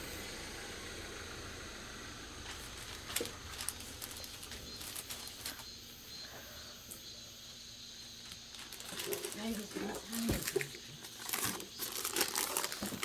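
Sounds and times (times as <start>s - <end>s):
steady low hiss: 0.0s - 13.0s
paper wrappers rustling: 2.4s - 5.7s, 8.1s - 13.0s.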